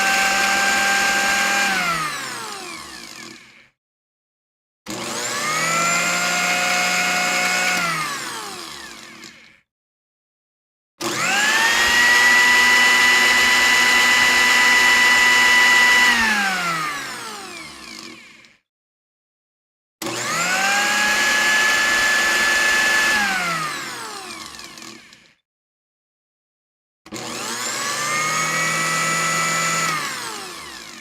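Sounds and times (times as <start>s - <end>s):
electric motor whining: 11.1s - 18.2s.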